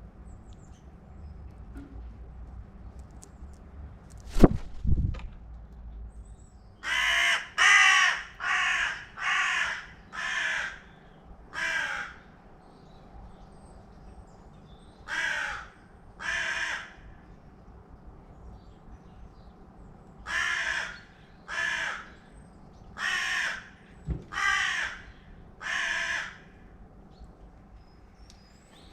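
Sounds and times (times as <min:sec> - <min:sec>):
crow cawing: 0:06.8 - 0:12.4, 0:15.1 - 0:17.2, 0:20.2 - 0:22.2, 0:23.0 - 0:26.7.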